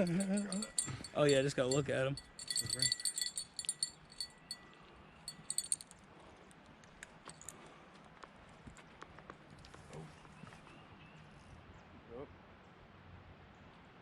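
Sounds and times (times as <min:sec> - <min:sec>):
bite alarm bell jingling: 0:00.0 - 0:05.9.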